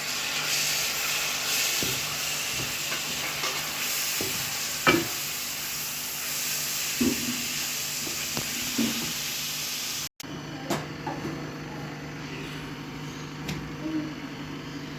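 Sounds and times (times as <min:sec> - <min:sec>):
food sizzling in a pan: 0:00.0 - 0:10.1
spoon knocking against pan: 0:01.8 - 0:05.2.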